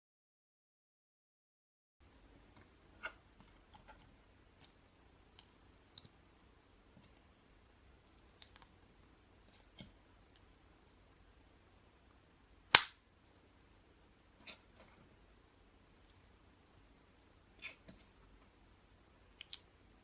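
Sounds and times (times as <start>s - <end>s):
plastic bricks clicking together: 8.1s - 8.7s, 19.4s - 19.7s.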